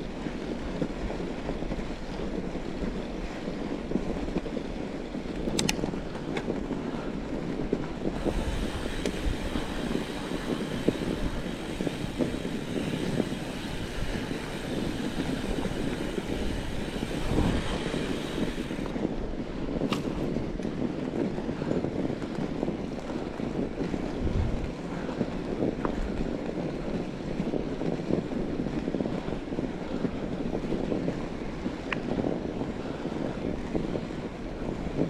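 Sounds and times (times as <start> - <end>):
tyres rolling over snow: 0.0 - 35.0
wind on microphone: 0.0 - 35.0
small knocks and clicks: 5.5 - 6.5.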